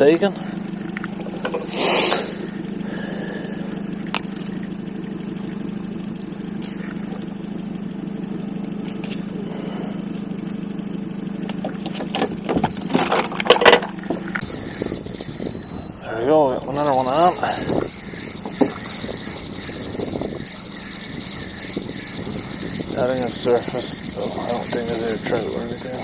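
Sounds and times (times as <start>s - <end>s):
boat motor idling: 0.0s - 26.0s.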